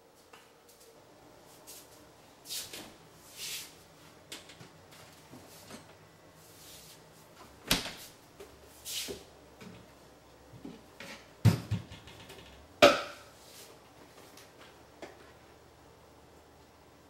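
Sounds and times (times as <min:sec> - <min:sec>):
knocks and thumps: 0:11.4 - 0:13.0.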